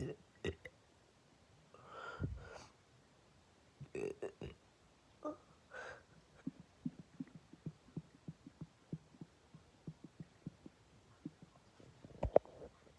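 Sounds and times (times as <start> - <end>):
soft low body thumps: 2.2 - 2.6, 6.3 - 12.9.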